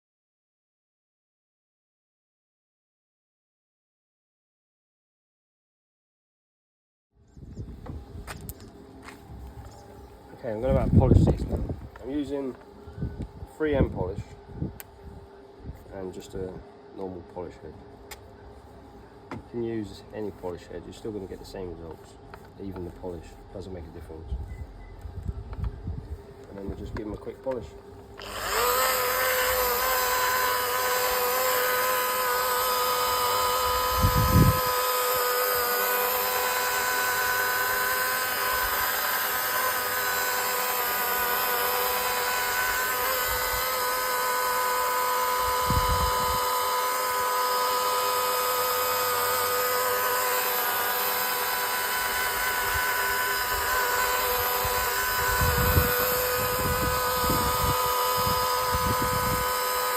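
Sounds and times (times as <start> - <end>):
polishing machine whine: 28.2 - 59.9.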